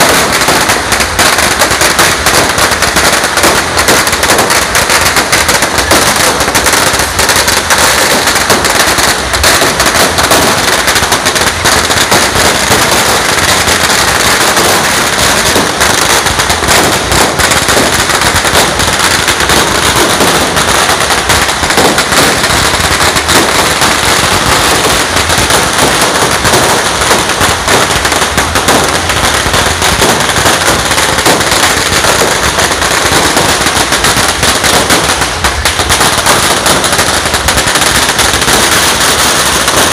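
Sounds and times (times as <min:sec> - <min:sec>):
fireworks and firecrackers crackling: 0:00.0 - 0:39.9.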